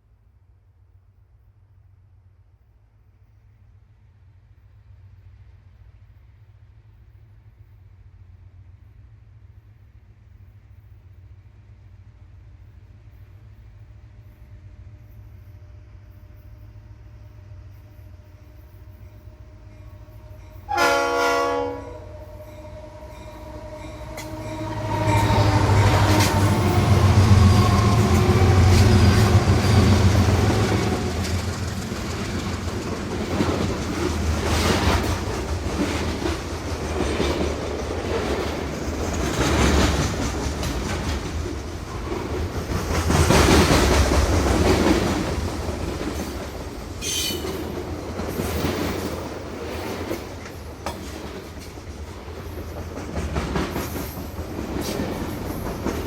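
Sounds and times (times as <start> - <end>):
train horn blast: 15.6 - 31.6, 47.0 - 47.6
train wheels clacking on rails: 22.0 - 56.0.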